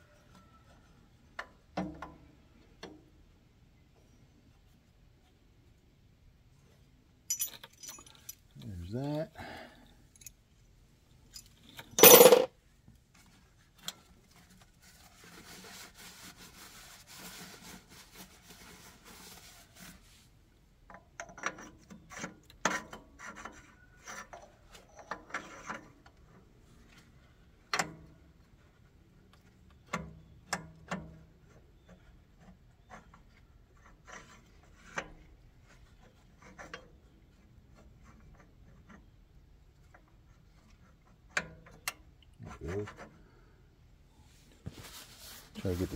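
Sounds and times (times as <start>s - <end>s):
metal parts scraping: 11.4s - 12.5s
metal clank: 12.0s - 12.5s.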